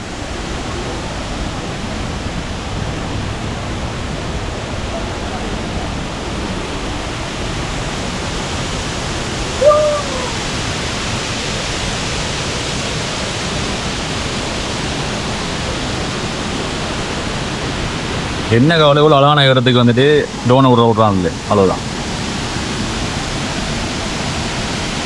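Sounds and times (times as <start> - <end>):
waterfall rushing: 0.0 - 25.0
short call falling in pitch: 9.6 - 10.5.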